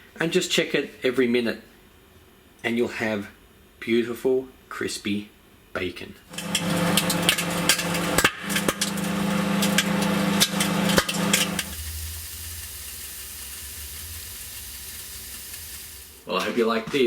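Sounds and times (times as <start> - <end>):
soft low hum and hiss: 0.0 - 6.3
microwave oven humming: 6.3 - 12.8
bacon crackling and popping: 6.3 - 16.2.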